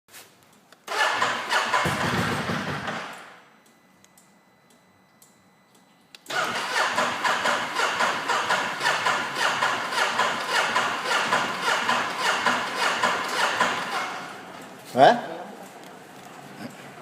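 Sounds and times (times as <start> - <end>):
engine starter cranking: 0.9 - 3.2, 6.3 - 14.3.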